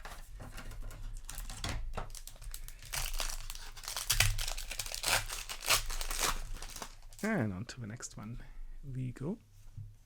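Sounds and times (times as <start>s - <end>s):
foil wrapper crinkling: 1.0s - 7.3s.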